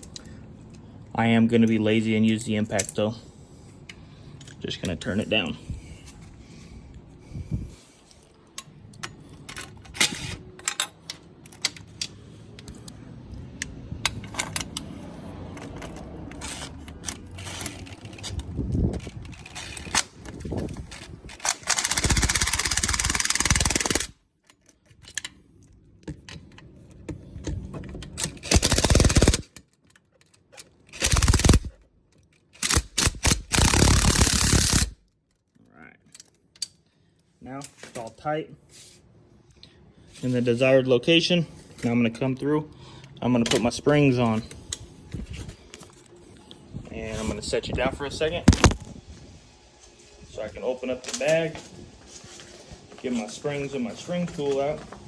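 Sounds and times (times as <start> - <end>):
impact driver rattling bursts: 21.4 - 24.2, 28.3 - 29.6, 30.9 - 31.8, 32.6 - 35.0.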